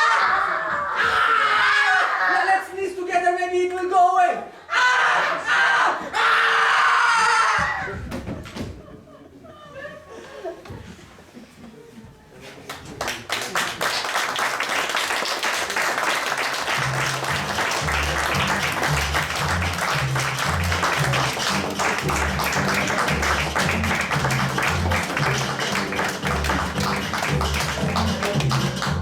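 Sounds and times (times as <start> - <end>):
audience applauding: 12.7 - 29.0
lively music with bass line: 16.8 - 29.0.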